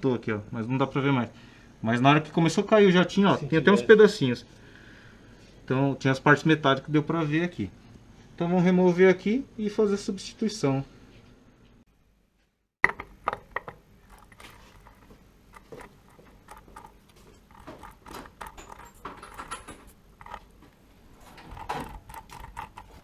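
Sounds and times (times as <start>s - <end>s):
metallic clinks of hand tools: 17.6s - 20.4s.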